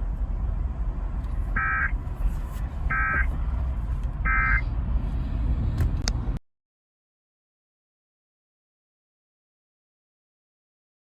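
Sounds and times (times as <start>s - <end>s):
steady low rumble: 0.0s - 6.4s
harsh digital squawk bursts: 1.6s - 1.9s, 2.9s - 3.3s, 4.3s - 4.6s.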